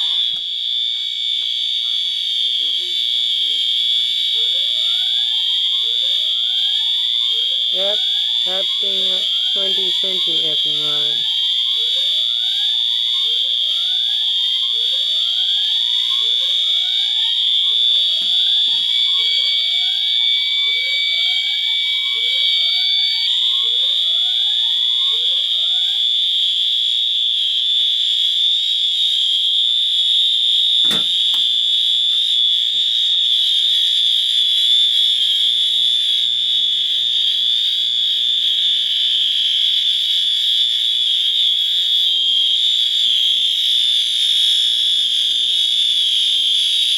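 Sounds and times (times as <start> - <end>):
steady high-pitched alarm horn: 0.0 - 46.9
sharp click: 30.8 - 31.5.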